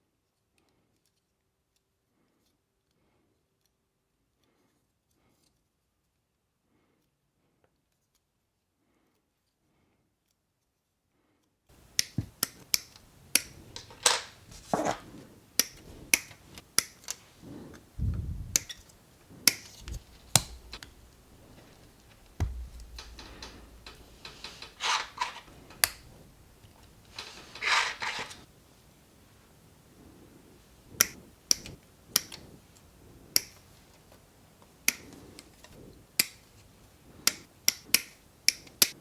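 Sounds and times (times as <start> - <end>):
plastic clicks and snaps: 11.8 - 15.0, 15.6 - 17.2, 18.4 - 28.5, 30.9 - 33.8, 34.8 - 39.0
scraping rustles: 13.0 - 37.2
dull knock: 19.8 - 24.6.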